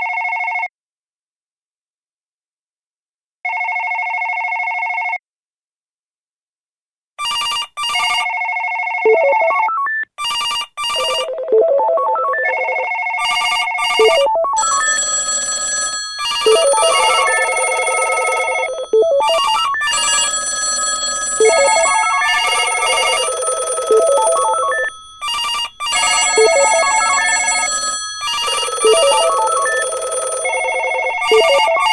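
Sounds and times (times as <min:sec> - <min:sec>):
many telephones ringing: 0:13.2 - 0:31.9.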